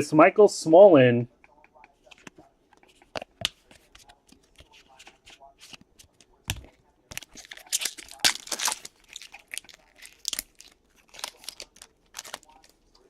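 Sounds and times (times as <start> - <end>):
cards and foil wrapper crinkling: 6.6 - 13.0.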